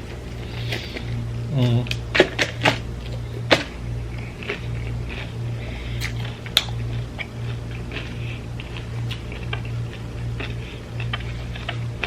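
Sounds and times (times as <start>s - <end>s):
food being chewed: 0.0s - 12.0s
low hum: 0.0s - 12.0s.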